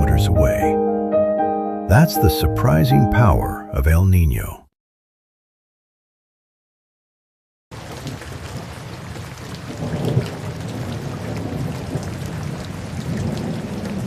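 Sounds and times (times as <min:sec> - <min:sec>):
steady rain: 0:07.7 - 0:14.0
thunder rumbling: 0:07.8 - 0:14.0.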